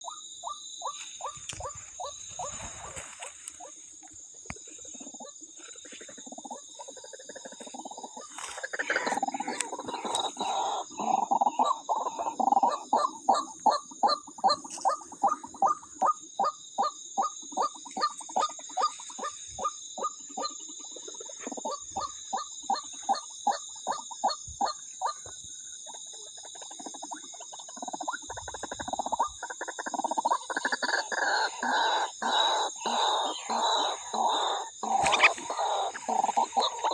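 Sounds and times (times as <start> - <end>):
waterhen calling kwak: 26.5 - 36.9.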